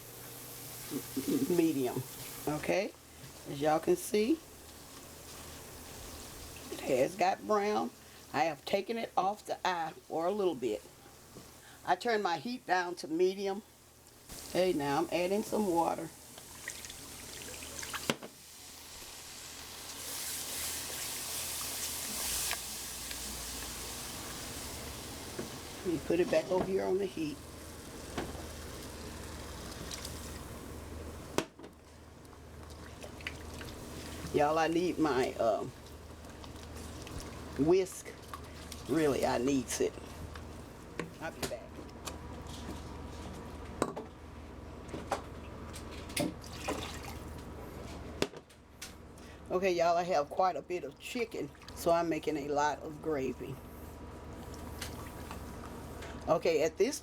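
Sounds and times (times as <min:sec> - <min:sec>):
water sizzling in hot oil: 0:00.0 - 0:08.2, 0:14.2 - 0:31.4, 0:32.6 - 0:39.7.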